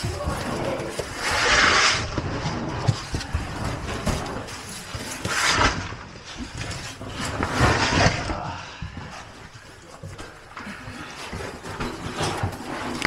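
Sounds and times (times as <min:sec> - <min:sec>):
loud rustling bursts: 0:00.0 - 0:08.5
scraping against rock: 0:00.0 - 0:09.8, 0:10.4 - 0:13.0.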